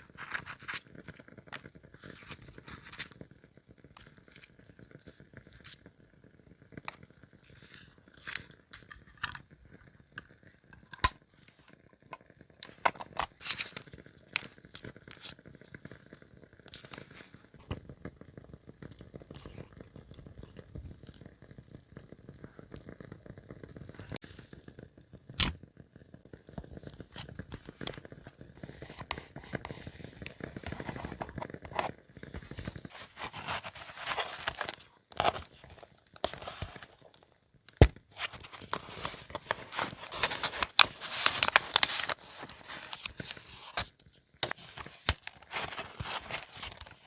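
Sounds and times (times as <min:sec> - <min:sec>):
paper rustling and tearing: 0:32.4 - 0:37.0, 0:37.8 - 0:47.0.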